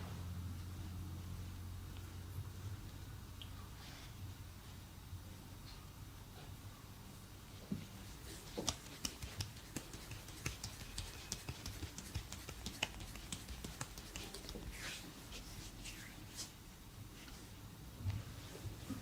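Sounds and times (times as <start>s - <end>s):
hands rubbing: 8.1s - 16.6s.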